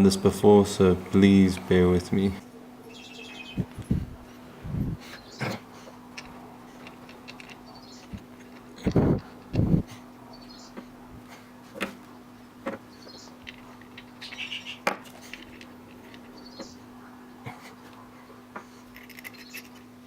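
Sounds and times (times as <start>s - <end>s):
steady low hum: 0.0s - 20.0s
bird chirping faintly: 2.8s - 3.7s, 16.3s - 16.9s
small hard parts clicking: 6.1s - 9.8s, 13.4s - 16.8s, 18.9s - 19.9s.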